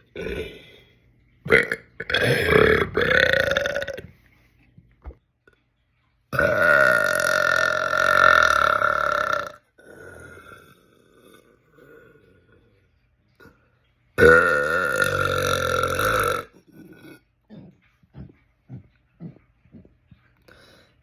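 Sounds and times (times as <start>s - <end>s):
man burping: 0.0s - 0.7s, 1.5s - 4.1s, 6.4s - 11.8s, 14.2s - 19.4s.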